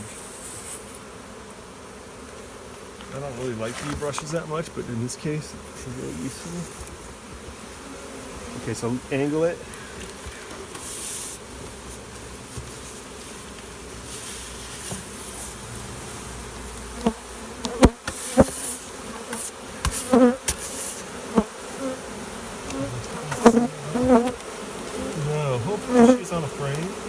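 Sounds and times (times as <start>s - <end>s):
bee swarm buzzing: 0.0s - 27.0s
scraping or rustling: 3.3s - 4.4s.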